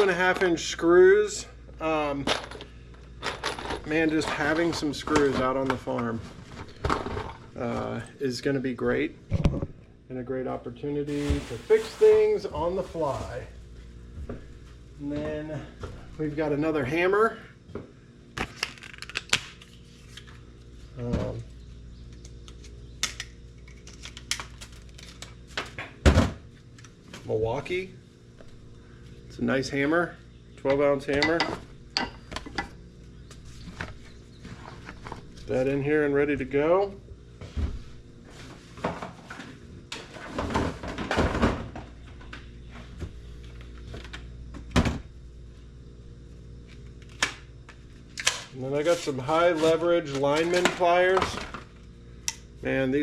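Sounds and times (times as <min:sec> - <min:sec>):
canvas bag rustling: 0:11.1 - 0:13.5.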